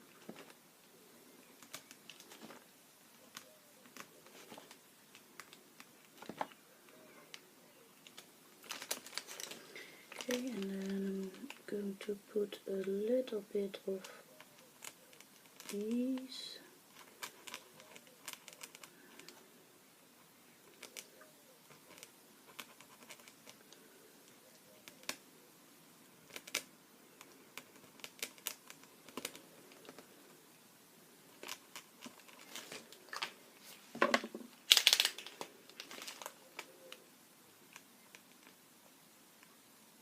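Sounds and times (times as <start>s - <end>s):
rustle and clatter: 1.4s - 11.7s, 31.3s - 37.0s.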